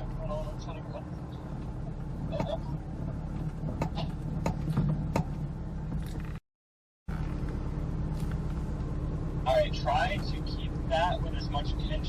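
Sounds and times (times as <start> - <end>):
car engine idling: 0.0 - 6.4, 7.1 - 12.0
sharp clicks and knocks: 3.4 - 6.4.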